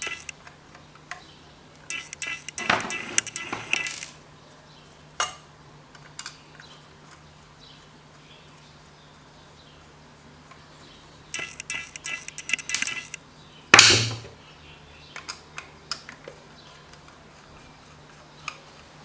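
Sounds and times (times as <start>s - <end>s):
sharp click: 0.0s - 0.4s, 1.9s - 4.1s, 11.4s - 13.2s
small hard parts clattering: 1.9s - 4.2s.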